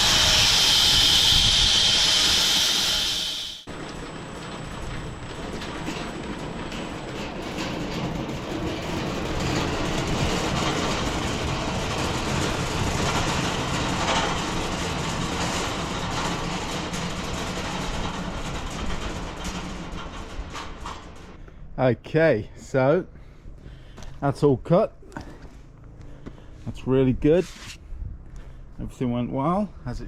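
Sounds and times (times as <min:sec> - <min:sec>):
bandsaw mill sawing log: 0:00.0 - 0:03.6.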